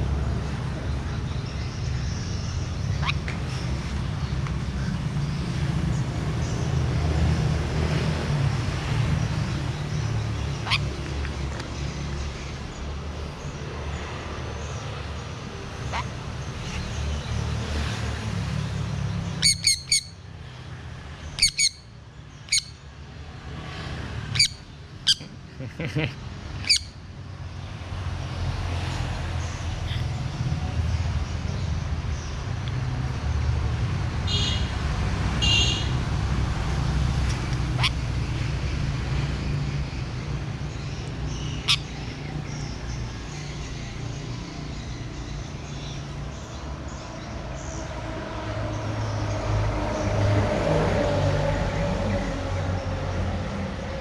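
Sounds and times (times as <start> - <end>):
road traffic rumble: 0.0 - 54.0
parrot squawking shrilly: 10.6 - 10.9, 19.4 - 20.2, 21.4 - 21.9, 24.3 - 25.2, 26.6 - 27.0, 41.6 - 41.9.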